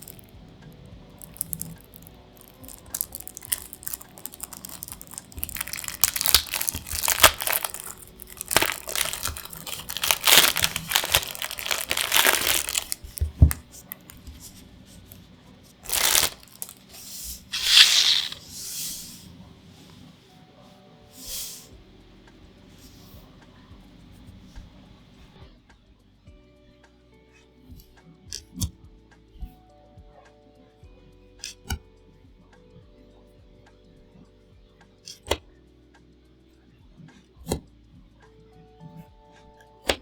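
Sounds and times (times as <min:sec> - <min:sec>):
packaging rustling and crinkling: 0:00.0 - 0:00.3, 0:01.2 - 0:15.2, 0:15.8 - 0:18.6
packaging tearing: 0:00.0 - 0:00.3, 0:01.2 - 0:14.5, 0:15.9 - 0:18.5.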